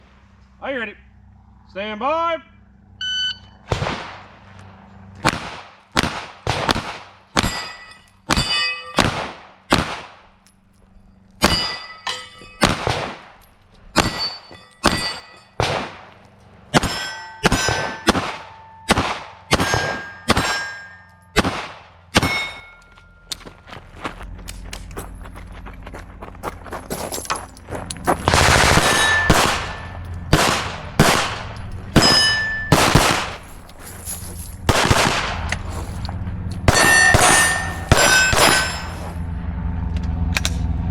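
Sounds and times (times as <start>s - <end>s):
pistol shots: 3.7s - 4.4s, 5.2s - 10.4s, 11.4s - 11.9s, 12.6s - 13.4s, 14.0s - 22.7s, 28.2s - 33.6s, 34.6s - 39.1s
steel plate clanging: 7.4s - 9.2s, 10.5s - 15.7s, 16.7s - 23.7s, 26.9s - 39.3s.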